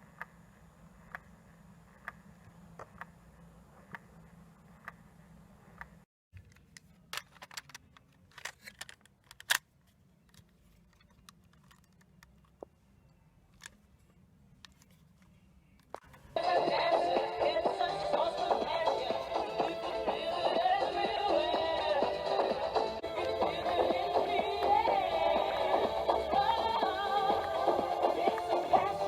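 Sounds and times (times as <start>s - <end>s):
faint steady hum: 0.0s - 8.9s.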